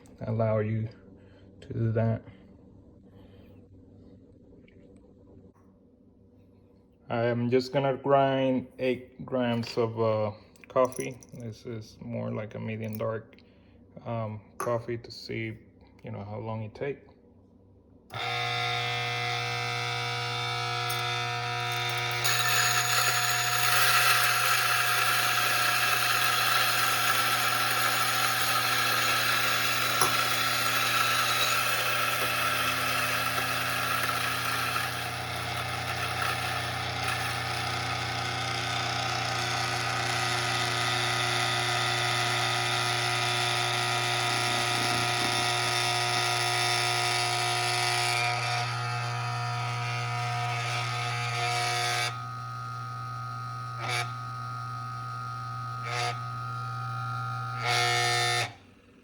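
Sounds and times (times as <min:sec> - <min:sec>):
coffee grinder motor grinding beans: 0:18.1 - 0:59.0.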